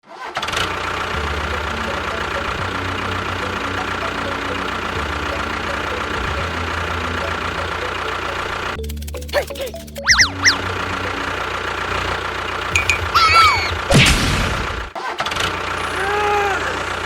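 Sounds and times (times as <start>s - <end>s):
small motor whining: 0.5s - 14.0s.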